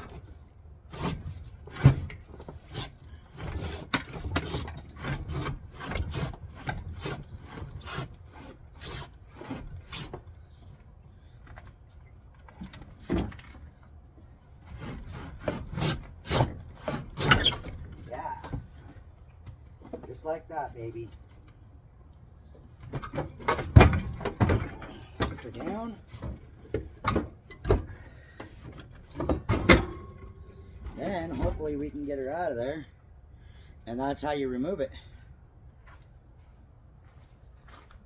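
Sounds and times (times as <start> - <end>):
fridge scraping and knocking: 0.9 - 10.2, 22.9 - 28.0, 28.7 - 31.9.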